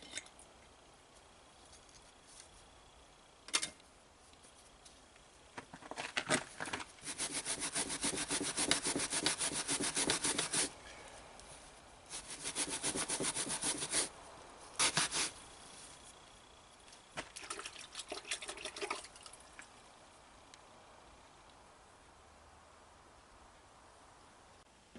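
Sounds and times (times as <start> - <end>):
fast rubbing strokes on a surface: 7.0 - 10.8, 12.1 - 14.1, 14.8 - 15.4.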